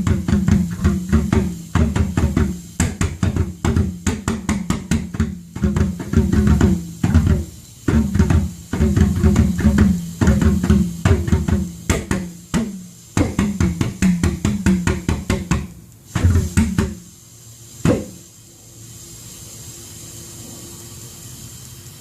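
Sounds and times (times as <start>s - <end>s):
pulse jet popping and banging: 0.0s - 17.0s, 17.8s - 18.2s
steady hiss: 0.0s - 22.0s.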